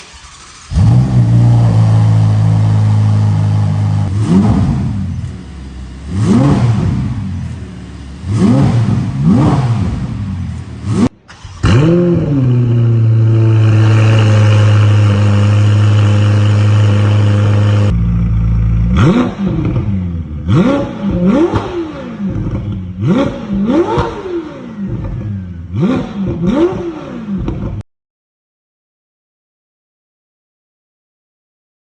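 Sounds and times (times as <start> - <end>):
car engine idling: 0.0 - 23.8
car engine revving: 0.0 - 27.8.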